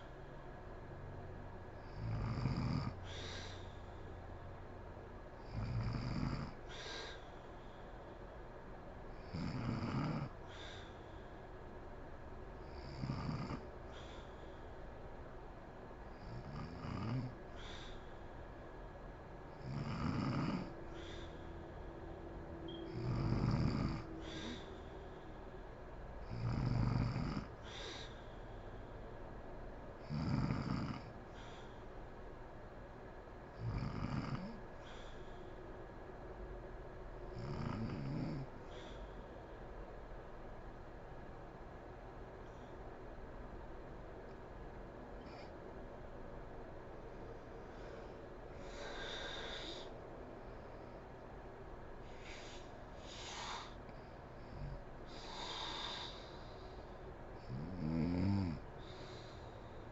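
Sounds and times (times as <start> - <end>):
woman snoring: 1.8 - 3.6, 5.4 - 7.2, 9.2 - 10.8, 12.7 - 13.6, 16.2 - 17.4, 19.6 - 21.3, 22.8 - 24.7, 26.2 - 28.1, 30.0 - 31.2, 33.6 - 34.6, 37.4 - 38.5, 54.4 - 56.3, 57.4 - 59.2
hissing breath: 47.7 - 50.0, 52.0 - 54.1, 55.1 - 57.0.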